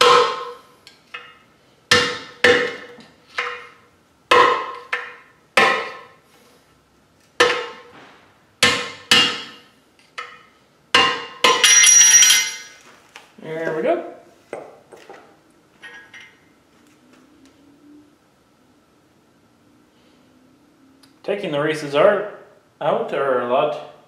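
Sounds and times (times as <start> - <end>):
hammer striking metal: 0.0 - 0.6, 1.2 - 6.2, 7.4 - 12.8.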